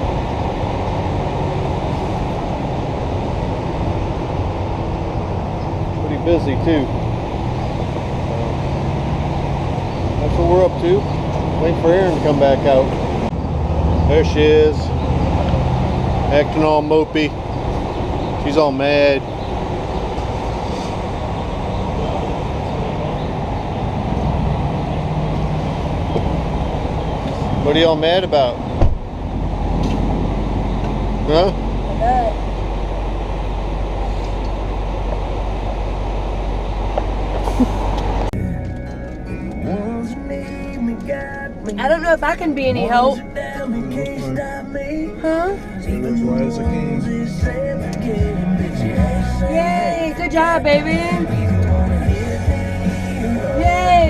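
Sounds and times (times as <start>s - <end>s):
vehicle idling: 0.0s - 54.0s
low hum: 19.2s - 54.0s.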